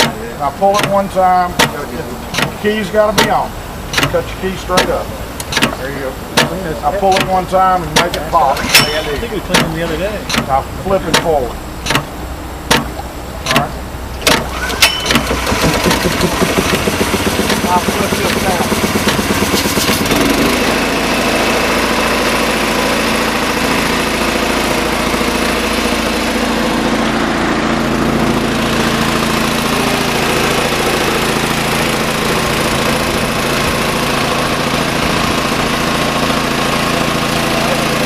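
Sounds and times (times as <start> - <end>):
small gasoline engine running: 0.0 - 12.1, 12.7 - 38.0.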